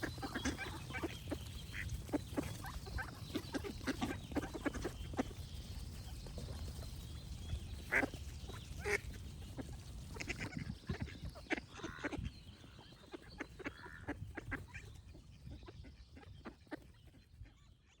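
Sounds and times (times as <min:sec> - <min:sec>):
ducks quacking: 0:00.0 - 0:05.4, 0:07.9 - 0:17.9.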